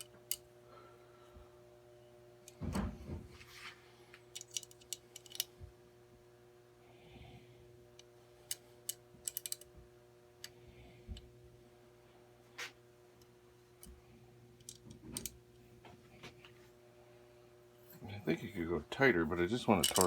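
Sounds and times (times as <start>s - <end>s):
sharp small metal clicks: 4.4s - 5.5s, 8.0s - 9.7s, 19.8s - 20.0s.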